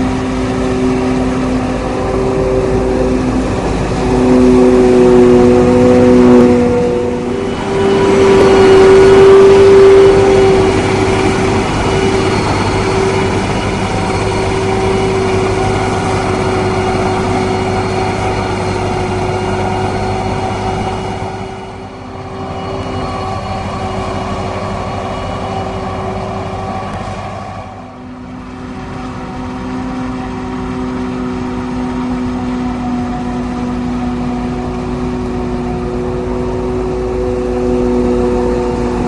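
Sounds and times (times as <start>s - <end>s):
harvester engine drone: 0.0s - 39.0s
steady machine whine: 0.0s - 39.0s.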